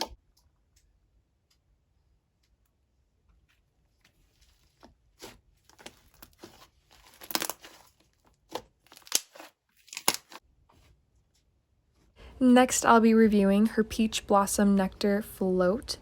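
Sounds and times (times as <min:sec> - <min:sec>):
slime crackling and popping: 0:05.1 - 0:10.4.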